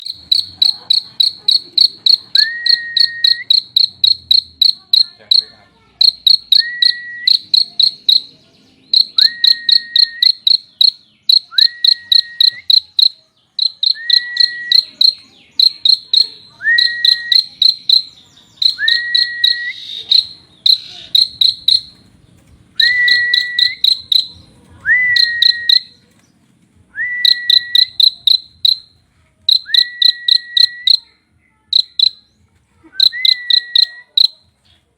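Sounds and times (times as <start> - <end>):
bird chirping rapidly: 0.0 - 26.0, 27.2 - 28.9, 29.5 - 31.1, 31.7 - 32.3, 33.0 - 34.4
bird whistle rising: 2.4 - 3.7, 6.3 - 7.4, 13.8 - 14.8, 16.6 - 20.3, 22.8 - 24.1, 24.9 - 25.9, 27.0 - 28.2, 29.5 - 31.0, 33.0 - 34.1.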